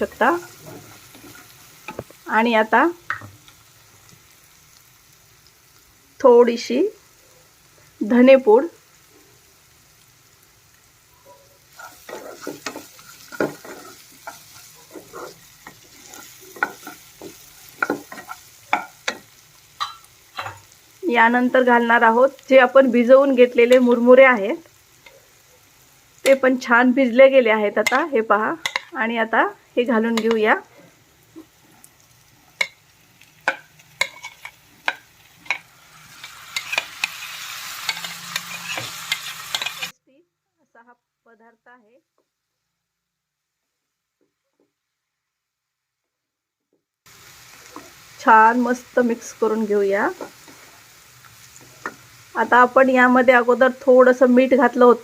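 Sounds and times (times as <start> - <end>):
faint sizzle: 0.0 - 55.0
spoon scraping in a pan: 0.3 - 2.1, 11.6 - 20.8, 27.8 - 29.0, 30.1 - 40.0, 50.1 - 52.3.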